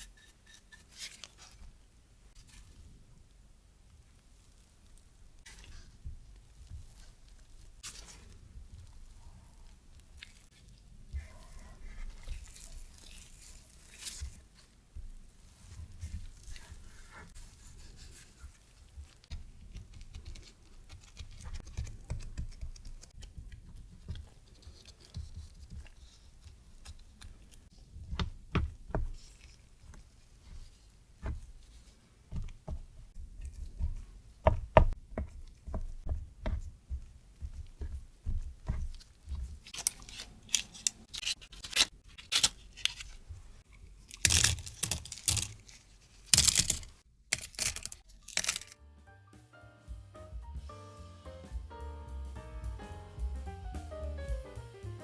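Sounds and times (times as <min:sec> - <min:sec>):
dough being handled: 0:03.9 - 0:48.8
crisp rustle: 0:04.3 - 0:19.3, 0:38.9 - 0:48.8.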